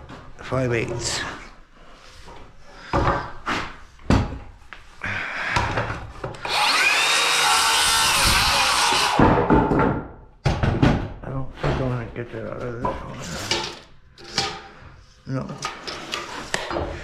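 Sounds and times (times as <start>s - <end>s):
power saw cutting wood: 6.4s - 9.3s
wooden knocks: 9.2s - 12.0s.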